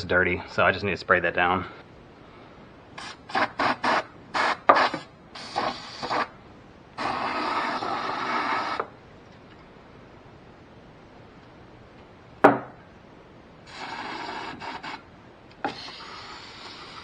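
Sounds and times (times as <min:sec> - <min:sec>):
aerosol can spraying: 0:03.0 - 0:06.3.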